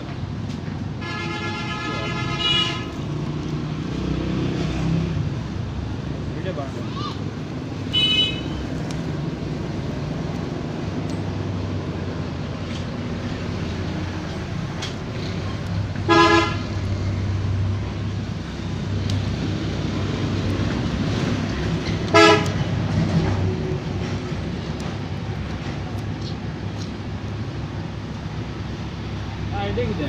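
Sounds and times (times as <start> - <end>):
low traffic rumble: 0.0 - 30.0
vehicle horn toots: 1.0 - 2.9, 7.9 - 8.6, 16.1 - 16.6, 22.1 - 22.6.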